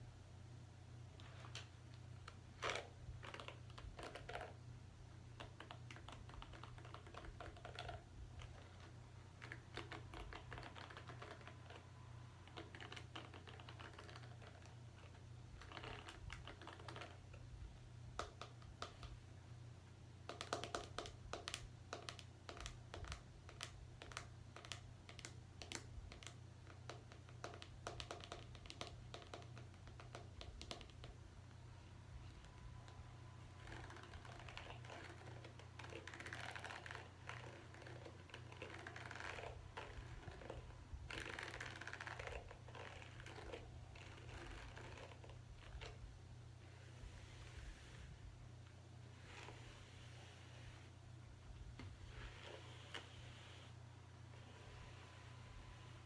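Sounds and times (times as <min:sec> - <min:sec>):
low steady hum: 0:00.0 - 0:56.0
scratching in hair: 0:05.5 - 0:17.4, 0:32.3 - 0:46.0.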